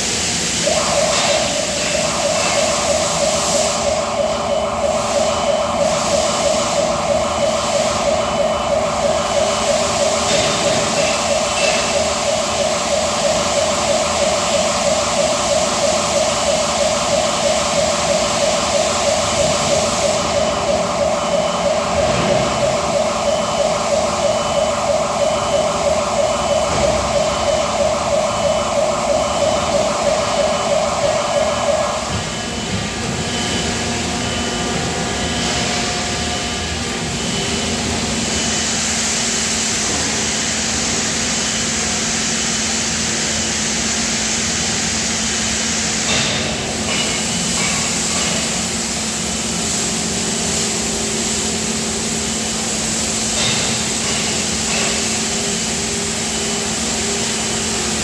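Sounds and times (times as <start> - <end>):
factory noise hiss: 0.0 - 58.0
steady machine noise: 0.0 - 58.0
rapidly pulsing warning tone: 0.6 - 32.7.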